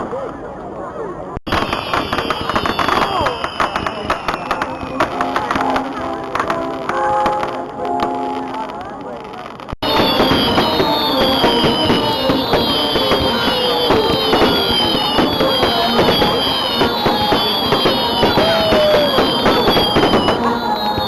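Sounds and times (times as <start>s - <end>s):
fireworks crackling and popping: 1.4s - 21.0s
firework whistles: 1.5s - 5.9s, 9.8s - 21.0s.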